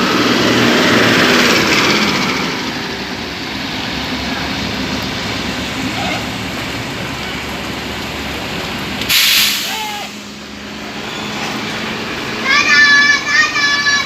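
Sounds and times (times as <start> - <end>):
bus diesel engine rumbling: 0.0 - 14.0
voices: 9.5 - 14.0.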